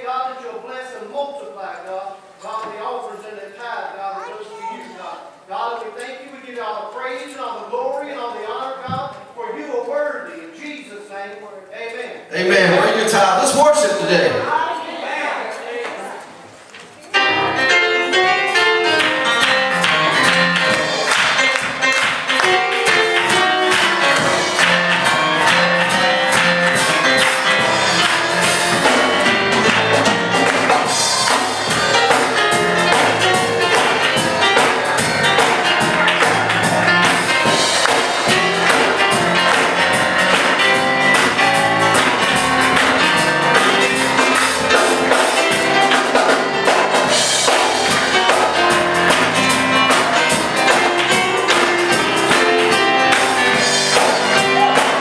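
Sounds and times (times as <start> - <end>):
worship band playing: 12.2 - 16.4, 17.1 - 55.0.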